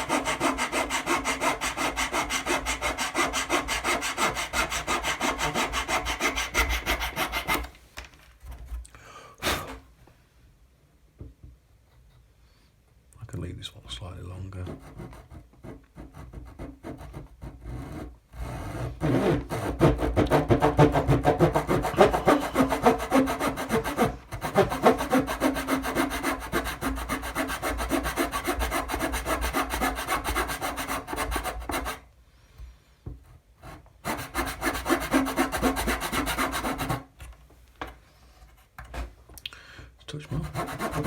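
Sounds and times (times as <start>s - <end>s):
saw cutting through wood: 0.0s - 7.7s, 14.7s - 32.0s, 33.6s - 37.0s, 40.3s - 41.0s.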